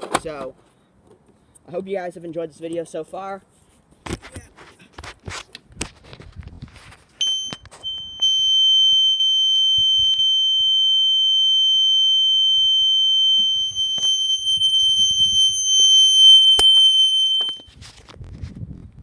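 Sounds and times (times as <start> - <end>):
horn strobe alarm tone: 12.7 - 17.7.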